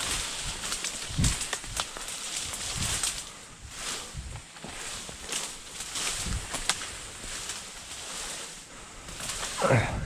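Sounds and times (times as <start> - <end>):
dry brush rustling and crackling: 0.0 - 10.0.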